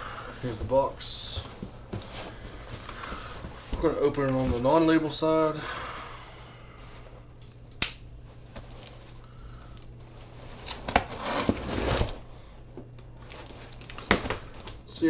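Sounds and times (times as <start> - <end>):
sharp snap: 7.8 - 8.1
tape and cardboard scraping: 10.6 - 12.2.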